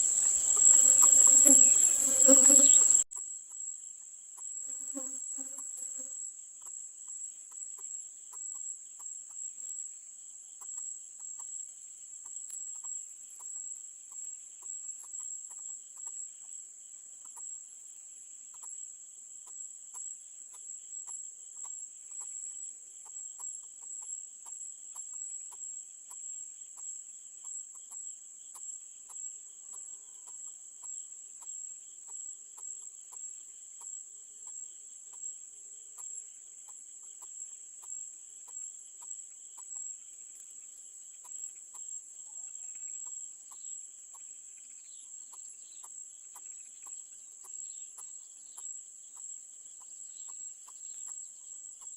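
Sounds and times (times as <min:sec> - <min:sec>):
crickets chirring: 0:00.0 - 0:03.8.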